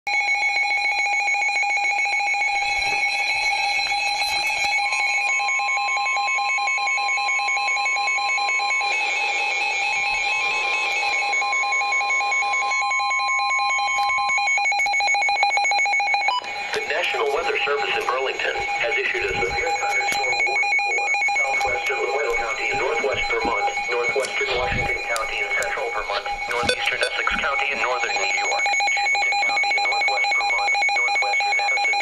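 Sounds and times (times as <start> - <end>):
steady warning alarm tone: 0.1 - 32.0
warbling high electronic tones: 16.2 - 32.0.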